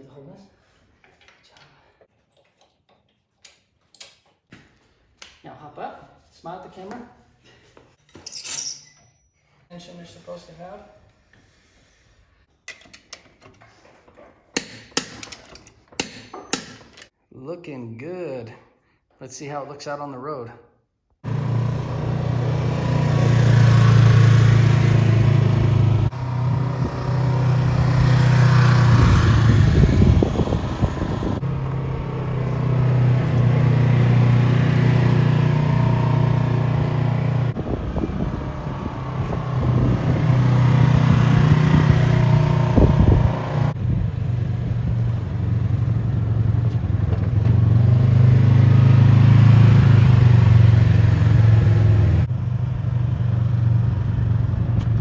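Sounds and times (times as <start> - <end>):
off-road vehicle engine running: 21.2 - 55.0.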